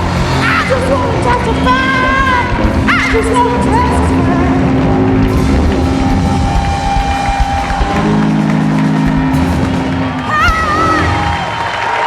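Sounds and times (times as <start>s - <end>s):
live soul band playing: 0.0s - 11.8s.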